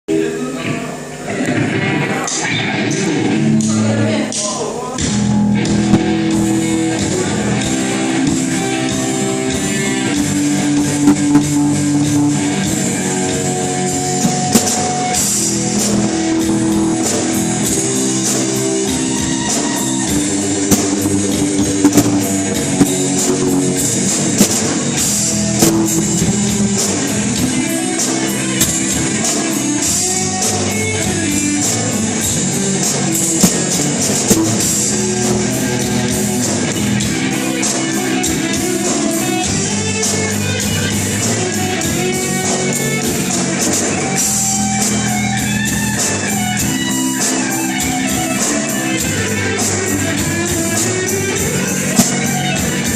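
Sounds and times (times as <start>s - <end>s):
rock band playing: 0.1s - 52.9s
cymbal and snare hits: 14.2s - 16.1s, 19.6s - 27.1s, 33.2s - 35.4s, 51.9s - 52.9s.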